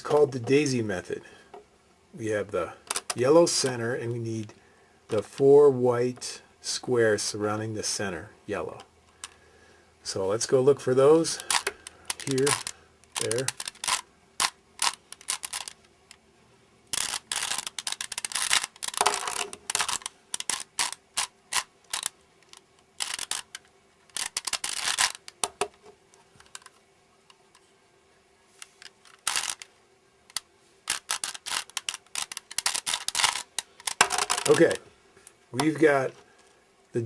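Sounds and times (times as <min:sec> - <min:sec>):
puzzle cube clicking as twisted: 0:11.4 - 0:15.9, 0:16.9 - 0:25.8, 0:28.6 - 0:29.7, 0:30.3 - 0:34.8.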